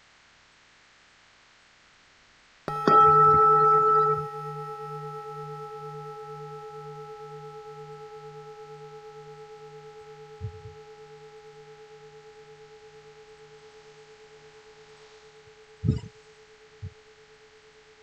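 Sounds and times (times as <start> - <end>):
large temple bell ringing: 2.7 - 15.6.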